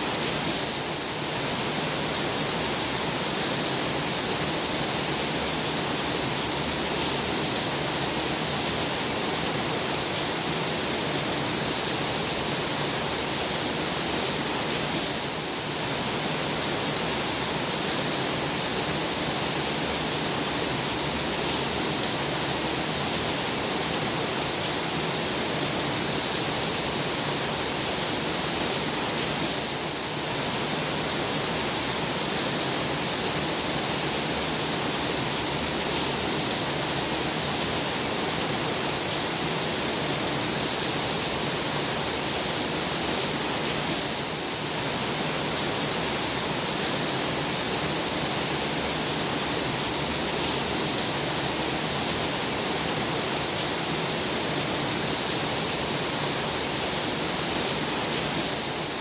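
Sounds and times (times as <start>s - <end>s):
heavy rain pouring: 0.0s - 59.0s.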